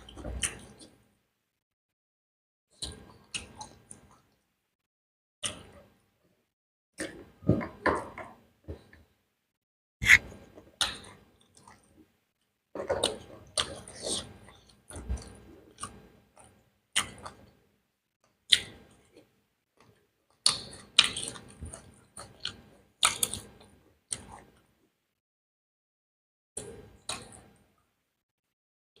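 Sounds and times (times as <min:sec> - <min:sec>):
person chewing food: 0:10.0 - 0:12.1.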